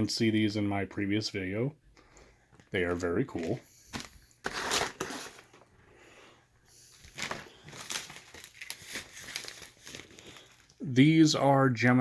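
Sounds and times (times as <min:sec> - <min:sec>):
packaging crinkling: 0:03.3 - 0:05.7, 0:06.7 - 0:10.8.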